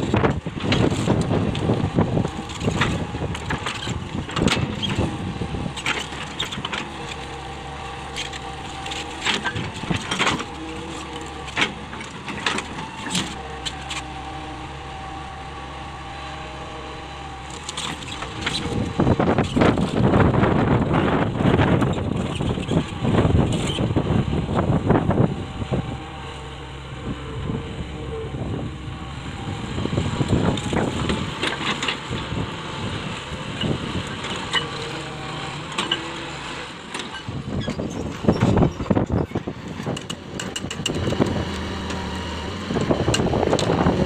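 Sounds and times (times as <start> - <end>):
excavator engine running: 0.0 - 44.0.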